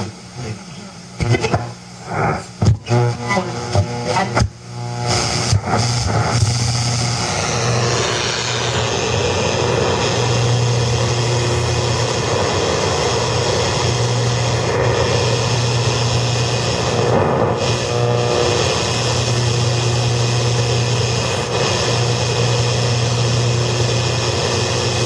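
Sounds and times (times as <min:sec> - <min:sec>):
static hiss: 0:00.0 - 0:25.0.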